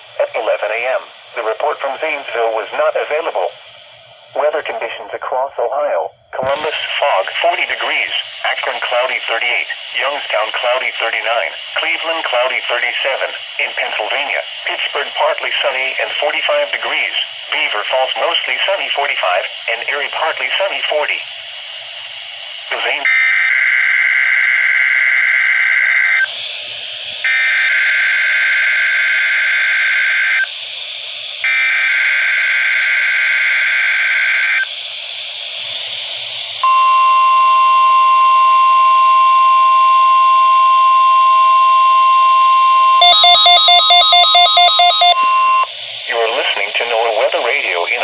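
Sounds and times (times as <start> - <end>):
steady warning alarm tone: 6.4 - 21.3, 22.5 - 48.0
screeching digital data bursts: 22.8 - 26.4, 27.2 - 30.6, 31.4 - 34.9, 36.2 - 48.0.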